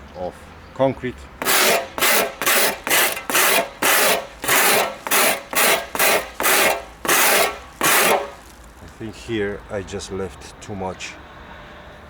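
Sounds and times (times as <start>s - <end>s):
trowel scraping wet concrete: 1.4s - 9.0s.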